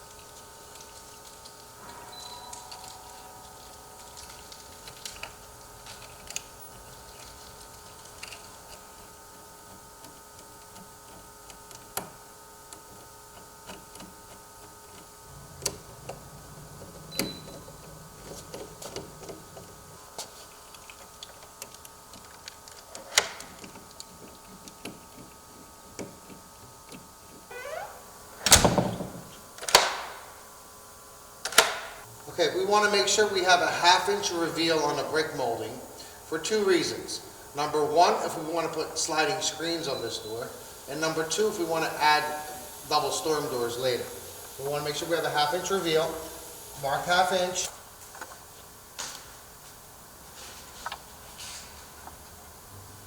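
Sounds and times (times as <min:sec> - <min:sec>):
low rumbling: 0:15.2 - 0:20.1
rising sweep: 0:15.3 - 0:20.0.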